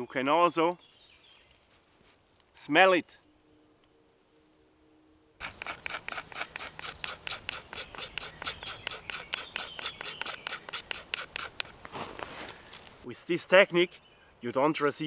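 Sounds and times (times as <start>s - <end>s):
small saw rasping at wood: 5.4s - 12.0s.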